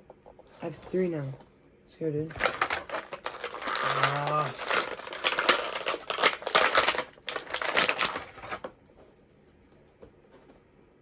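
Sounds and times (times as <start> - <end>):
plastic packaging crinkling: 2.3 - 8.7.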